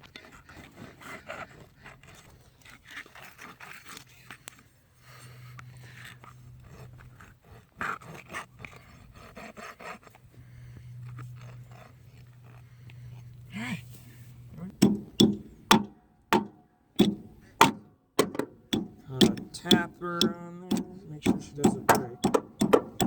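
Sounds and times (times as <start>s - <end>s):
clicks and knocks of hand tools: 14.8s - 23.0s.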